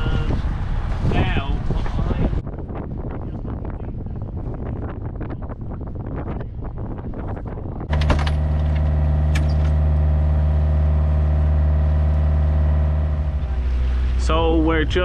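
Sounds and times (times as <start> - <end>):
wind buffeting microphone: 0.0 - 15.0
boat diesel engine drone: 7.9 - 15.0.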